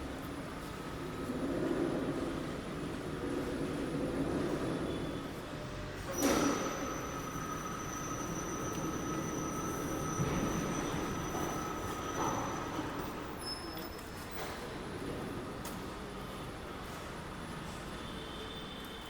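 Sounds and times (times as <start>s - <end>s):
high-pitched metal squeal: 6.2s - 13.8s.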